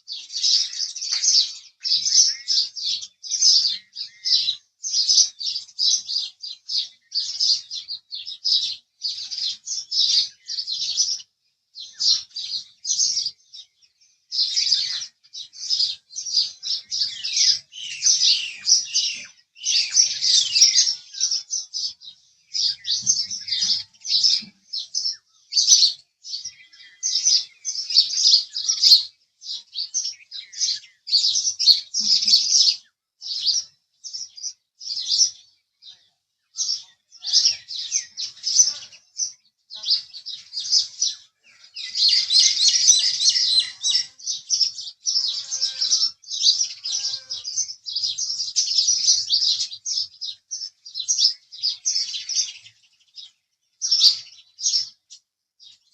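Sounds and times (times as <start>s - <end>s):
sparrows chirping: 0.0s - 55.9s.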